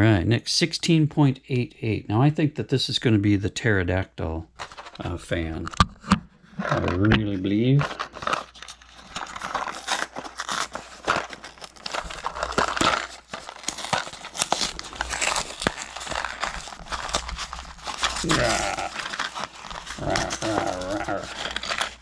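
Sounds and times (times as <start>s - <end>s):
plastic packaging crinkling: 6.6s - 22.0s.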